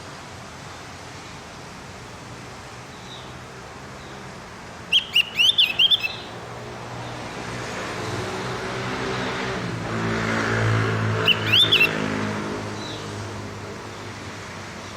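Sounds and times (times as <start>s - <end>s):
bird chirping song: 4.9s - 6.4s, 11.2s - 12.0s.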